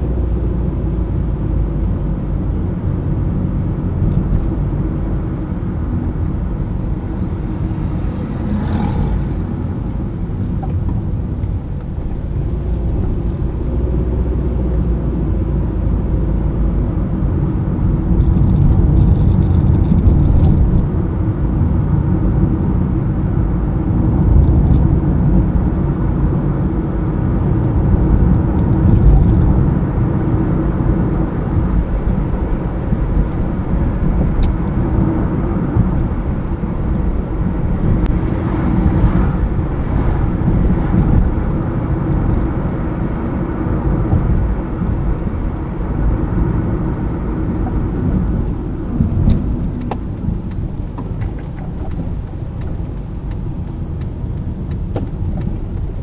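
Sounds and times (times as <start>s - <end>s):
car engine and road noise: 0.0s - 56.0s.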